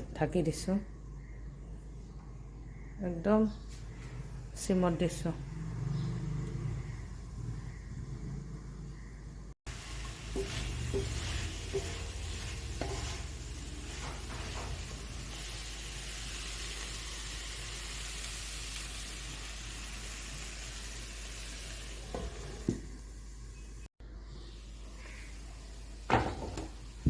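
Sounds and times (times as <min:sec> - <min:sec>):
food sizzling in a pan: 0:09.7 - 0:23.8.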